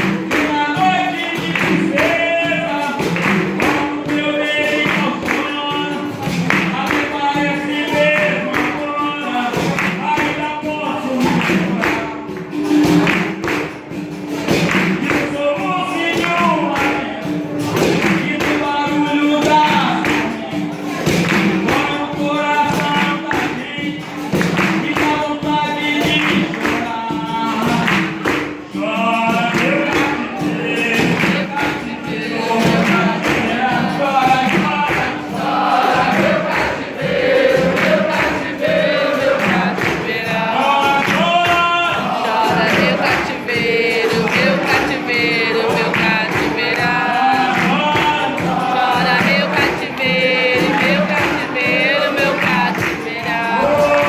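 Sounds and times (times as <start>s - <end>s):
hand clapping: 0.0s - 54.0s
men singing: 0.0s - 54.0s
percussion: 0.0s - 54.0s
group chorus answering: 30.5s - 54.0s.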